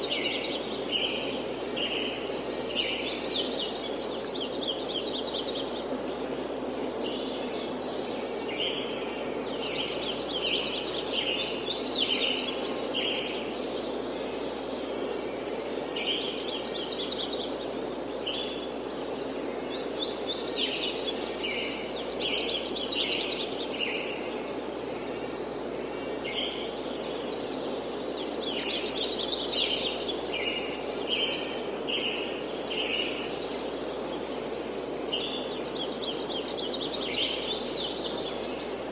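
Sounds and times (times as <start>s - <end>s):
light wind hiss: 0.0s - 38.9s
songbirds chirping: 0.0s - 38.9s.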